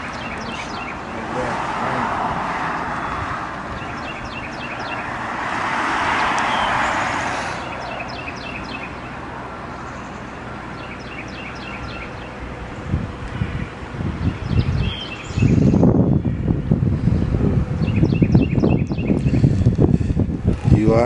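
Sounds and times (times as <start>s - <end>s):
bird chirping: 0.0s - 1.4s, 2.7s - 5.2s, 6.4s - 9.2s, 9.8s - 12.9s, 13.6s - 19.8s
vehicle passing: 0.0s - 21.0s.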